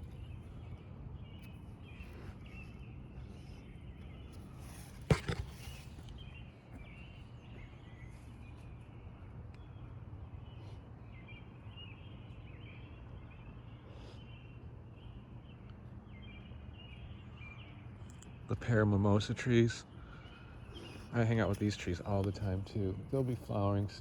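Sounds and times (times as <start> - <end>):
songbirds chirping: 0.0 - 24.0.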